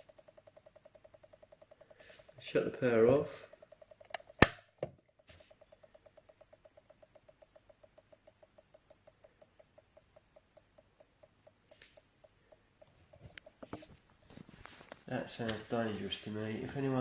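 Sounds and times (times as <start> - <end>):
power supply high clicking: 0.0 - 14.4
soft rustle: 13.3 - 16.3.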